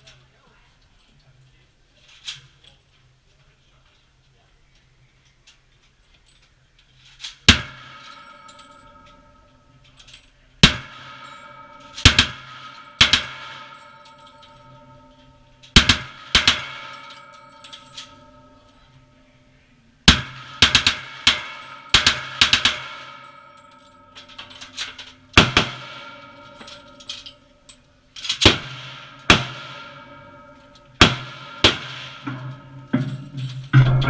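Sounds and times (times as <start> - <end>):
metallic ringing: 7.4 - 34.0.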